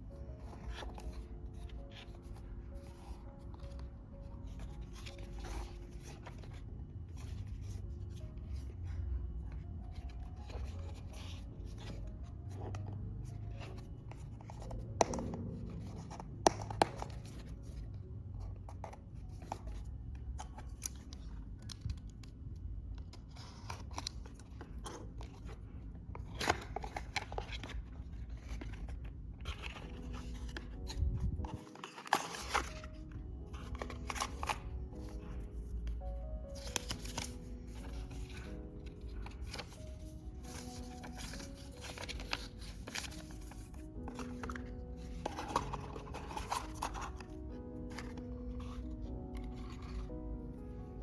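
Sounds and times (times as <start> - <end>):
packaging rubbing and rustling: 26.2 - 51.0.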